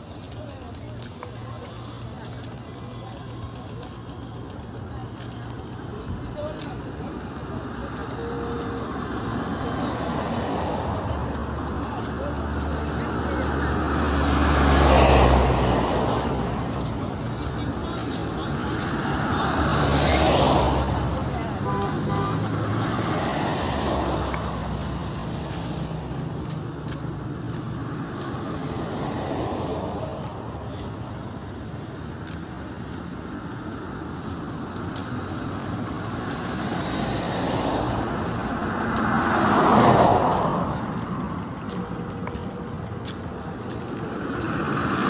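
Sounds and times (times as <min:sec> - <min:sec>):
road traffic: 0:00.0 - 0:45.0.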